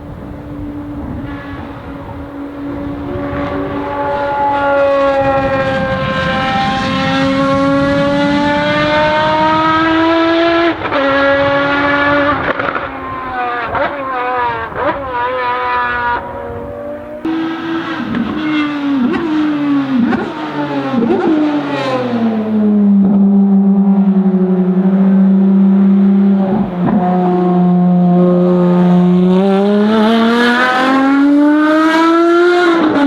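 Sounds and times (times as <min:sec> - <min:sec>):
downshifts with throttle blips: 0:00.3 - 0:33.0
race car engine revving: 0:00.6 - 0:33.0.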